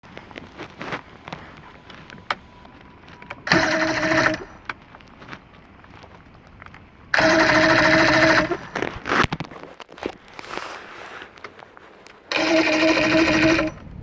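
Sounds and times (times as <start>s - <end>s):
electric starter cranking engine: 3.0s - 4.8s, 7.1s - 8.9s, 12.3s - 14.0s.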